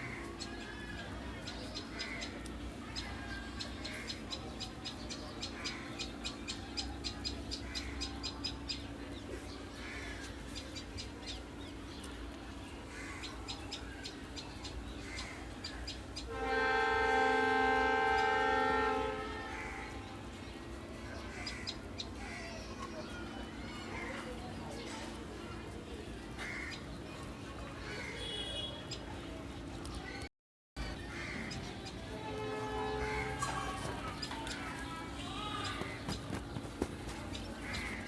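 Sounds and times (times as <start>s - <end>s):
birds chirping: 0.0s - 38.0s
horn steady chord: 16.3s - 19.9s, 32.1s - 33.6s
crow cawing: 26.4s - 26.8s, 31.1s - 31.6s.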